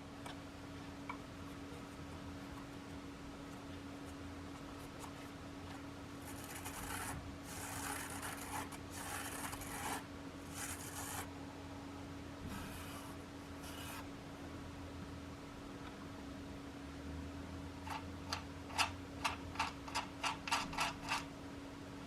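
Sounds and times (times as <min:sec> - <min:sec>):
faint steady hum: 0:00.0 - 0:22.0
rubbing and scraping: 0:06.2 - 0:11.3.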